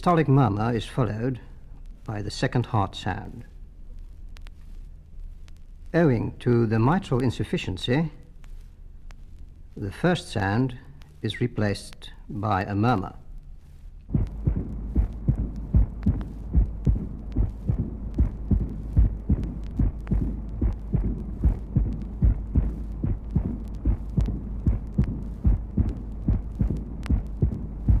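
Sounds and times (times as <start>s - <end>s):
low hum: 0.6s - 28.0s
heartbeat with murmur: 14.1s - 28.0s.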